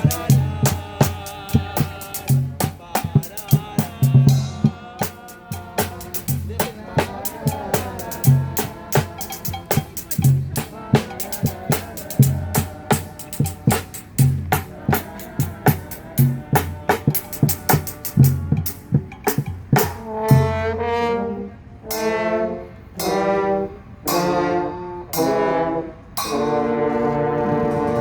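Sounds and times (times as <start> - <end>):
drums steady beat: 0.0 - 20.8
brass chords: 0.0 - 28.0.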